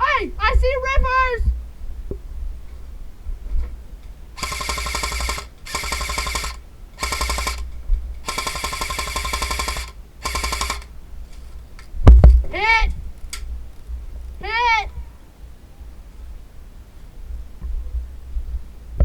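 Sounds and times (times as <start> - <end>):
airsoft gun firing bursts: 4.4 - 11.0
steady mechanical whine: 4.4 - 11.0.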